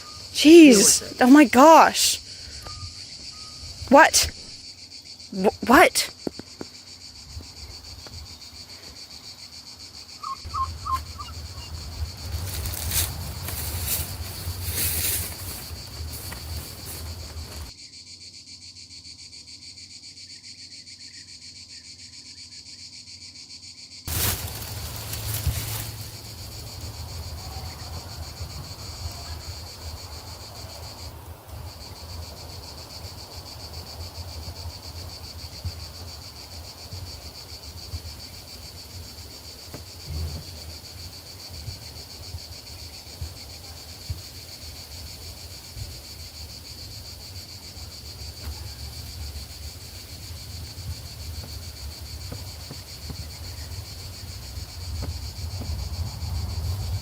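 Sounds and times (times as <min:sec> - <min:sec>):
insects chorus: 0:00.0 - 0:57.0
wind rumbling on microphone: 0:10.7 - 0:17.7, 0:24.4 - 0:32.7, 0:48.5 - 0:57.0.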